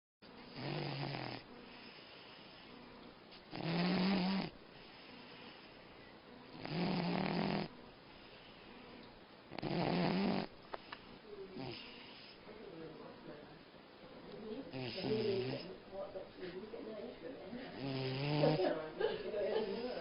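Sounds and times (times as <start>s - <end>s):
dog snoring: 0.5s - 2.8s, 3.5s - 5.8s, 6.5s - 8.8s, 9.5s - 12.4s, 14.7s - 15.8s, 17.7s - 18.8s, 19.6s - 20.0s.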